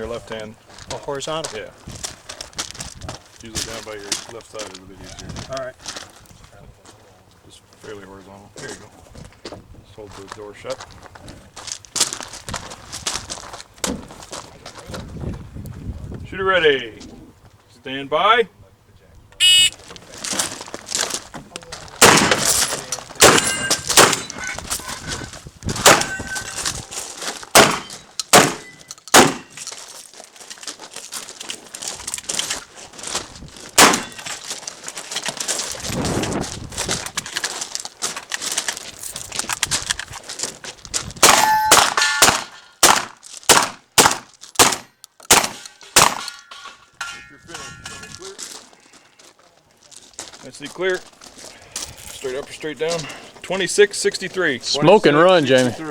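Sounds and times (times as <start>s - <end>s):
shotgun shots: 22.0s - 22.6s, 23.2s - 24.3s, 25.8s - 26.2s, 27.5s - 29.6s, 33.8s - 34.2s, 41.2s - 46.3s
steel targets ringing: 23.3s - 24.6s, 41.3s - 42.8s, 45.5s - 48.2s.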